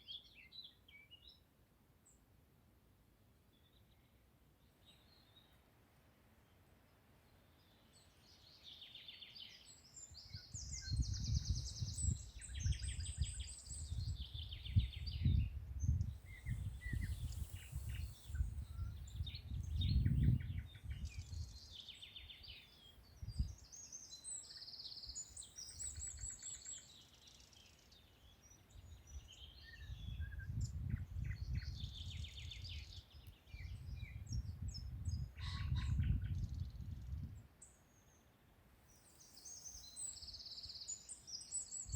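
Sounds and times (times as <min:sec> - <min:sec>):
songbirds singing: 0:00.0 - 0:02.3, 0:03.5 - 0:05.7, 0:06.4 - 0:41.9
low rumbling gusts: 0:14.9 - 0:21.0.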